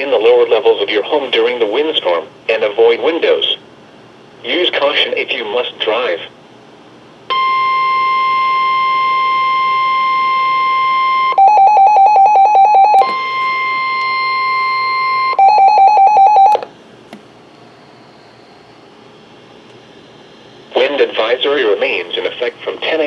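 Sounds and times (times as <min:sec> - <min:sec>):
faint radio hiss: 0:00.0 - 0:07.0, 0:17.1 - 0:23.0
steady high alert tone: 0:11.4 - 0:16.7.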